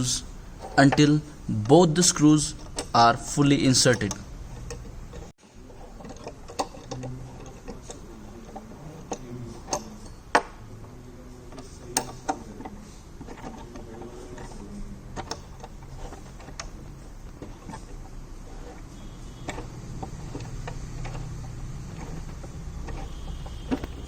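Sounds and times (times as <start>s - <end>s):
allen key clicking on bolts: 2.5s - 3.1s, 3.8s - 5.3s.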